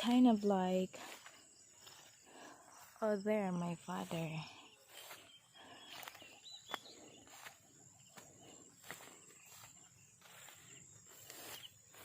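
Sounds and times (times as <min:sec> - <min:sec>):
footsteps through grass: 0:00.0 - 0:12.0
bird chirps: 0:04.2 - 0:08.5.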